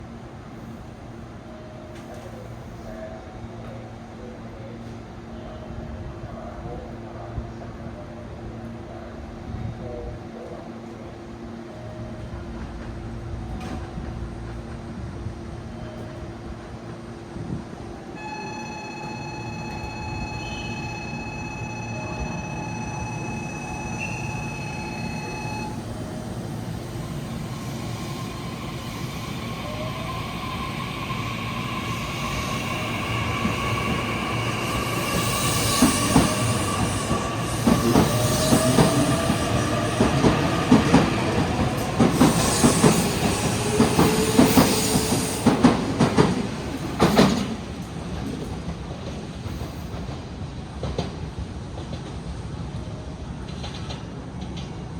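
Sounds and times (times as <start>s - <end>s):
train traction motor whine: 18.2s - 47.8s
train wheels clicking over rail joints: 32.6s - 52.2s.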